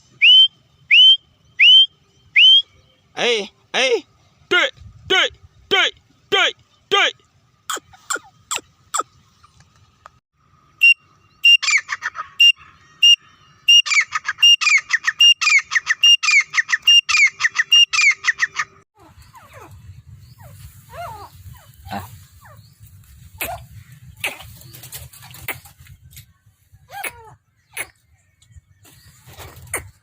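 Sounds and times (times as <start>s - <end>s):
quail calling: 10.8s - 25.7s.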